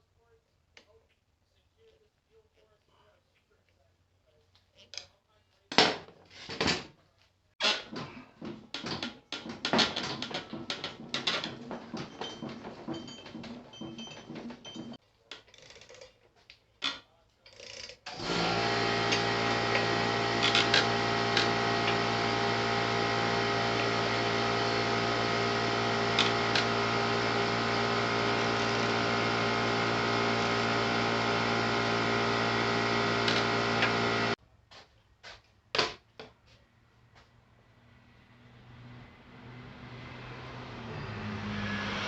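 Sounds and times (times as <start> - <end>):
motor running steadily: 18.1 - 34.4.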